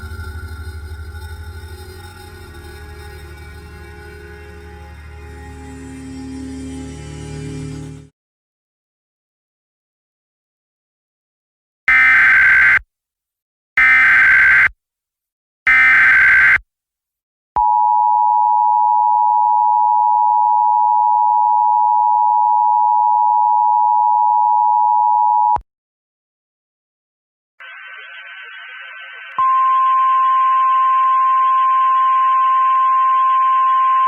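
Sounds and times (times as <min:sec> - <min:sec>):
emergency attention tone: 0:27.6 - 0:34.0.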